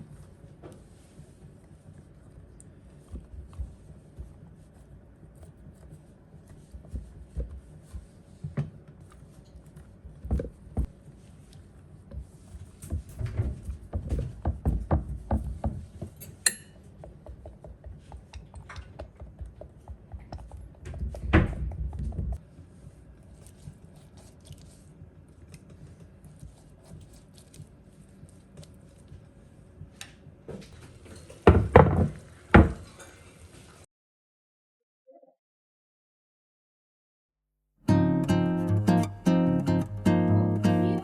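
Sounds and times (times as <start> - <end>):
dishes and utensils clinking: 16.2 - 16.9.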